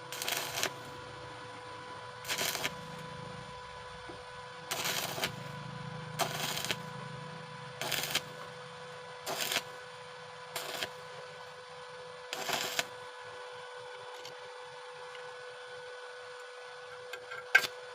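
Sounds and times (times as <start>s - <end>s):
welding arc crackling: 0.0s - 1.4s, 2.1s - 8.6s, 9.2s - 11.5s, 12.3s - 13.0s
steady electrical hum: 0.0s - 17.9s.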